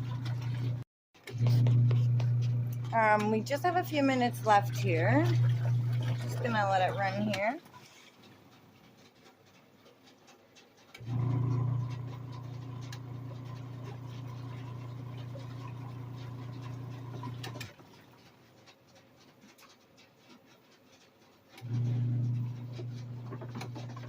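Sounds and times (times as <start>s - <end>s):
washing machine motor humming: 0.0s - 8.5s, 10.8s - 18.8s, 21.5s - 24.0s.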